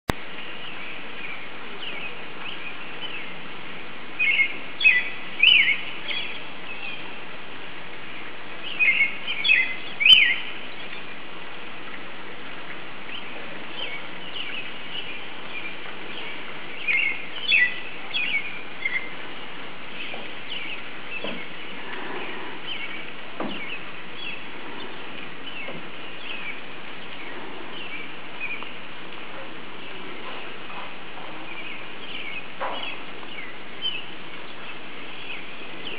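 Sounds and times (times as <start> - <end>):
songbirds chirping: 0.1 - 35.9
steady hiss: 0.1 - 35.9.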